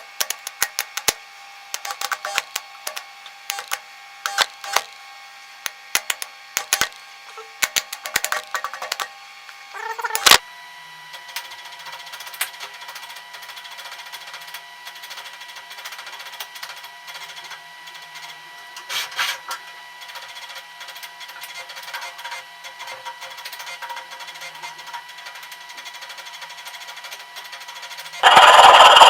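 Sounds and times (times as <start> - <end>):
faint mechanical whir: 0.0 - 29.0
small clicks: 0.1 - 1.2, 1.8 - 5.0, 5.7 - 7.0, 7.6 - 9.1.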